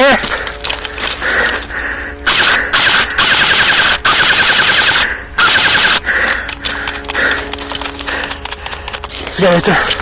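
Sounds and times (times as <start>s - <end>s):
airsoft gun automatic fire: 2.3s - 6.0s.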